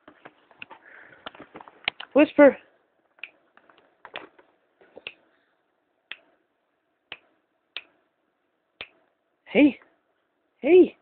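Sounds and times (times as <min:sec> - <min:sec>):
fingers snapping: 0:06.1 - 0:06.3, 0:07.1 - 0:08.0.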